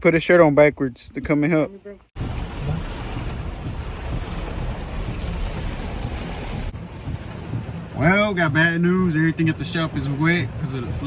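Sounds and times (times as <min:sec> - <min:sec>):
low rumble: 0:02.2 - 0:09.2
wind buffeting microphone: 0:02.2 - 0:11.0.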